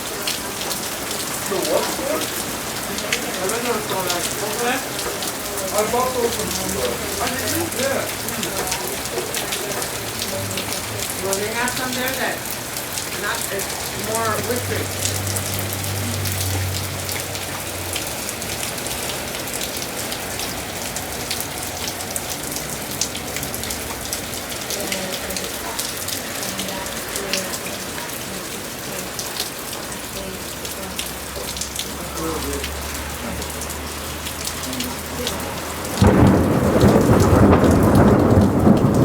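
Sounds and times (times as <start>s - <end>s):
heavy rain: 0.0s - 39.0s
thunder clap rumbling: 35.6s - 39.0s.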